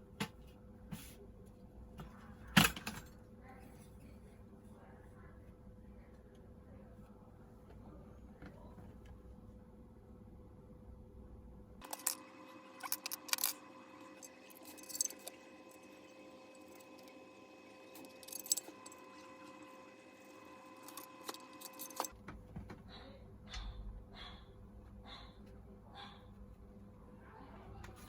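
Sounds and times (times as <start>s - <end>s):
small metal parts clinking: 11.8s - 15.9s, 17.9s - 19.2s, 20.8s - 22.1s.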